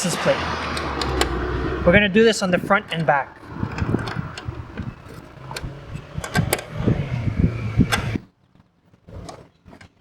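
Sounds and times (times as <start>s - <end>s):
hand tool clicks and knocks: 2.8s - 6.8s.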